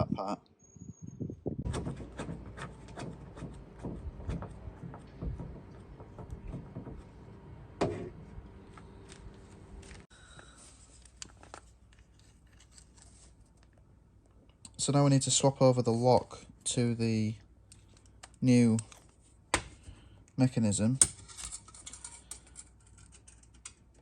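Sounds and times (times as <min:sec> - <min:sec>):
plastic parts knocking and rubbing: 0:01.6 - 0:08.2.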